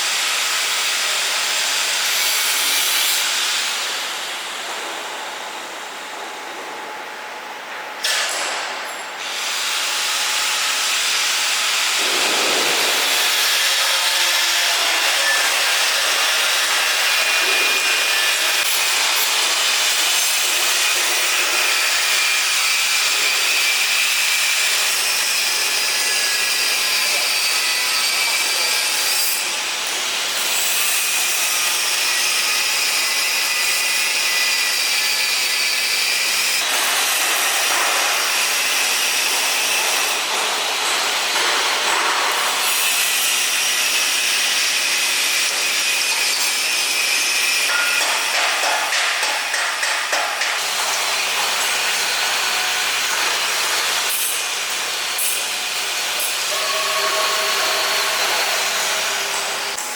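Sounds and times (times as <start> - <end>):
abrasive grinding on metal: 56.3 - 59.8.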